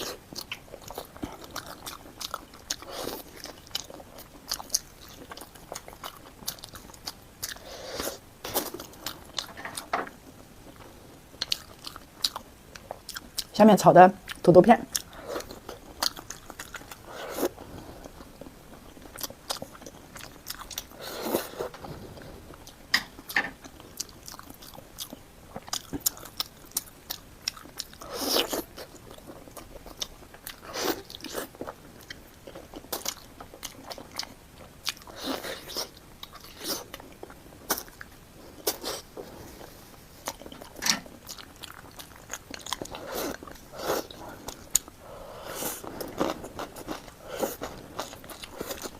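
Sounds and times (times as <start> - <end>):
person chewing crunchy food: 0.0 - 13.5, 14.2 - 48.9.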